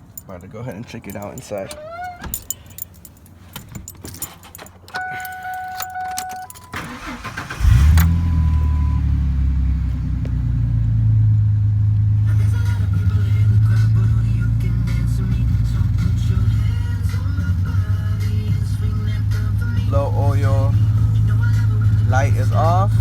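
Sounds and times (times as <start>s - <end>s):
keys jangling: 0.0s - 7.4s
engine starter cranking: 0.0s - 8.9s
dashboard warning chime: 0.0s - 9.1s
engine idling: 0.0s - 23.0s.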